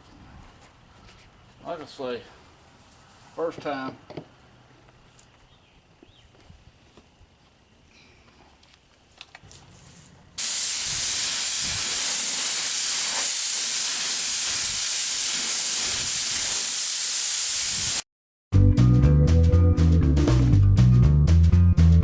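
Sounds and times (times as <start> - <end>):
paint spray gun hissing: 10.4 - 18.0.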